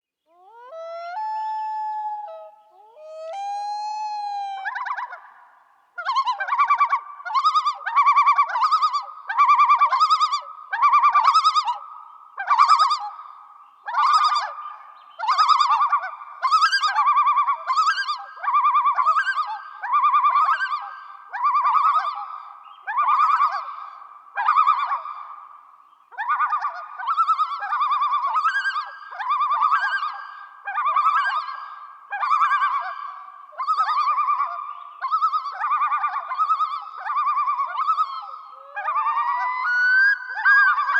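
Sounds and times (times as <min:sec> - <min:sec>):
loon calling: 0:00.3 - 0:11.7, 0:26.2 - 0:40.9.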